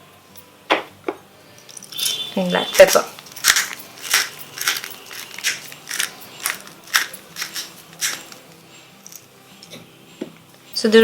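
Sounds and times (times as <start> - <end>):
pepper grinder grinding: 1.6 - 9.3.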